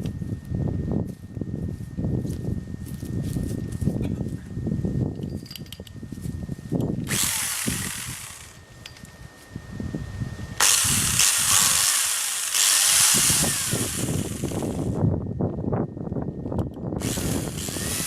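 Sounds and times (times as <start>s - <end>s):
faint steady whine: 0.0s - 18.0s
chainsaw cutting: 7.0s - 8.6s, 10.6s - 15.0s, 17.0s - 18.0s.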